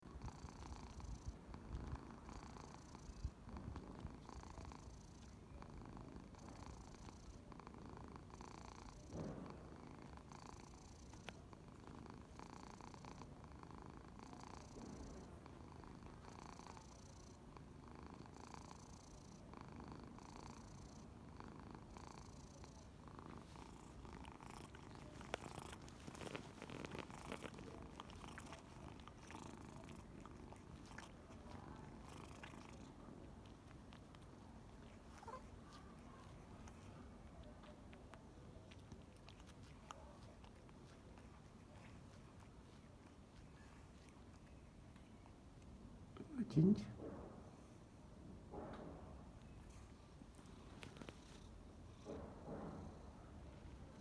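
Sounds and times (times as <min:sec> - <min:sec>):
cat snoring softly: 0:00.0 - 0:48.8, 0:49.4 - 0:54.0
small clicks and rustles: 0:22.8 - 0:45.8, 0:48.6 - 0:54.0.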